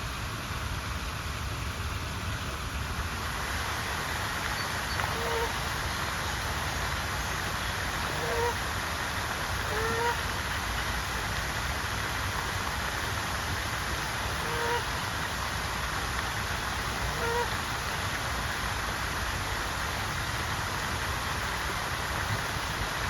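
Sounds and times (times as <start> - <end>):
steady rushing noise: 0.0 - 23.0
goose honking: 4.9 - 5.6, 8.0 - 8.6, 9.6 - 10.2, 14.3 - 14.9, 17.0 - 17.5.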